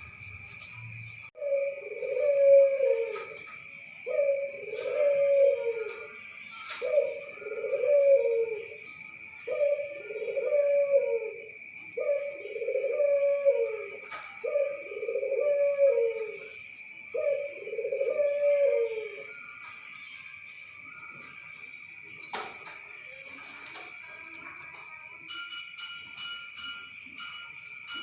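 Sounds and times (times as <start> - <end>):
high-pitched whine: 0.0 - 12.4
dove cooing: 0.0 - 20.0.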